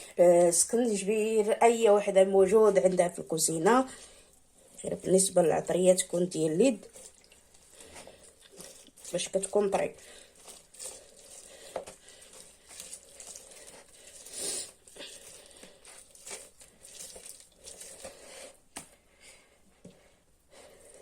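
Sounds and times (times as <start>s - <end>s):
lemons squelching being squeezed: 4.9s - 19.0s.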